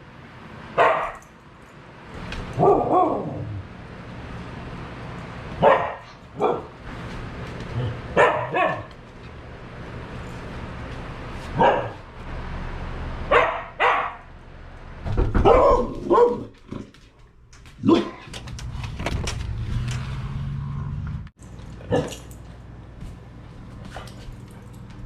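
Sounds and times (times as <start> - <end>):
dog barking: 0.8 - 1.2, 2.6 - 3.5, 5.6 - 6.7, 8.1 - 8.9, 11.6 - 12.0, 13.3 - 14.2, 15.4 - 16.5, 21.9 - 22.2.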